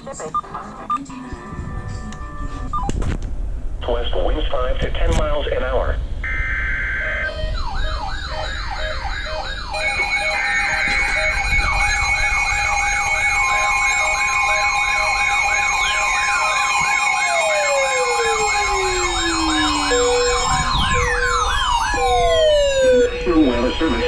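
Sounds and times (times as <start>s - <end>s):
falling siren wails: 6.2s - 24.0s
siren warble: 6.2s - 24.0s
siren yelp: 6.2s - 24.0s
steady siren tones: 6.2s - 24.0s.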